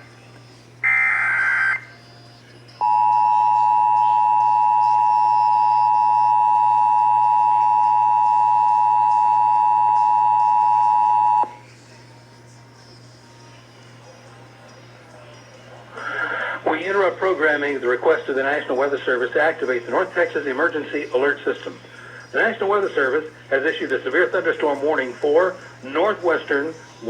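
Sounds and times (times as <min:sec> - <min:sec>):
screeching data burst: 0:00.8 - 0:01.9
two-tone alarm: 0:00.8 - 0:01.9, 0:02.8 - 0:11.5.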